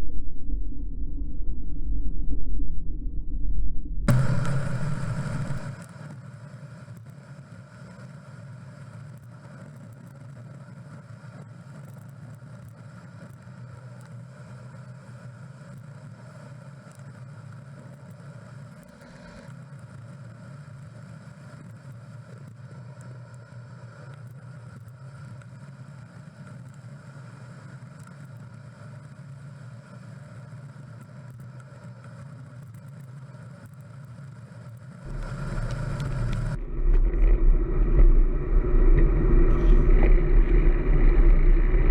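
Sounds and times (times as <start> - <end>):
wind rumble: 0.0 - 5.8, 35.1 - 41.9
bicycle road noise: 35.1 - 41.9.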